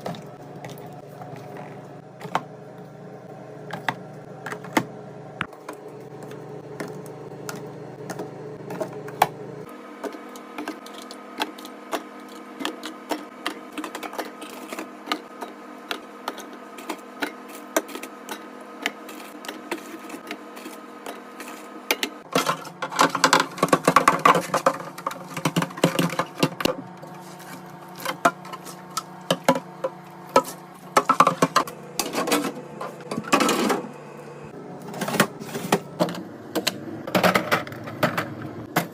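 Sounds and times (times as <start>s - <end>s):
steady hum: 0.0s - 38.9s
plastic containers clattering: 10.0s - 33.9s, 34.8s - 38.9s.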